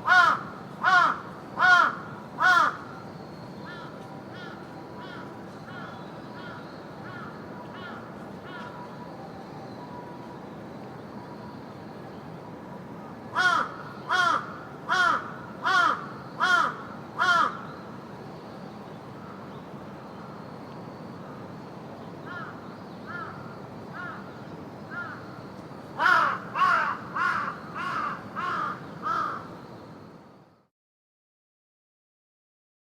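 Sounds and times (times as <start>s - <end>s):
ravens cawing: 0.0s - 2.9s, 3.7s - 8.8s, 13.4s - 17.7s, 22.3s - 24.3s, 26.0s - 29.5s
park background hiss: 0.0s - 30.7s.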